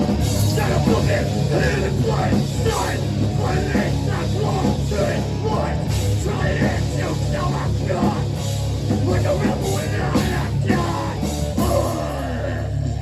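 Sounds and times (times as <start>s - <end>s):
drums hitting: 0.0s - 13.0s
heavy rock band playing: 0.0s - 13.0s.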